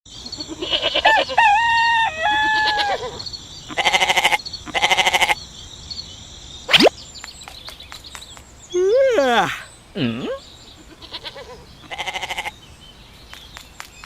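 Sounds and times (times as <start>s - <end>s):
short buzzy calls: 8.8s - 9.7s.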